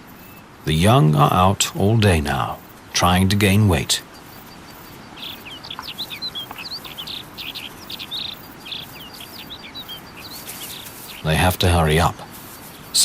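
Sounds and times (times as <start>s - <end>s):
insects humming: 0.0s - 13.0s
small birds chirping: 0.0s - 13.0s.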